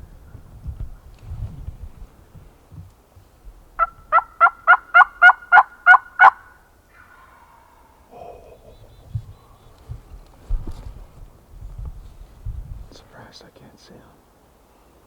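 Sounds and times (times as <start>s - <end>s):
turkey yelping: 3.8s - 9.7s.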